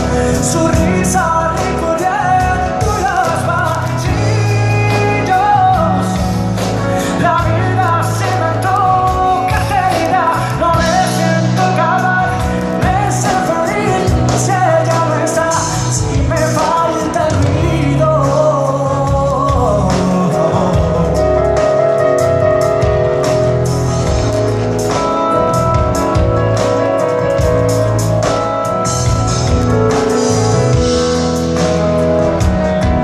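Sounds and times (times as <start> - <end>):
person singing: 0.0 - 23.2
drum kit beat: 0.0 - 33.0
live pop band playing: 0.0 - 33.0.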